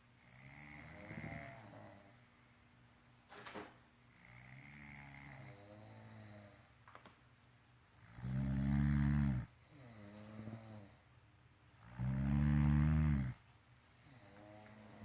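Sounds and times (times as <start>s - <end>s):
person snoring: 0.2s - 2.2s, 4.2s - 6.7s, 8.0s - 11.0s, 11.8s - 13.4s, 14.0s - 15.0s.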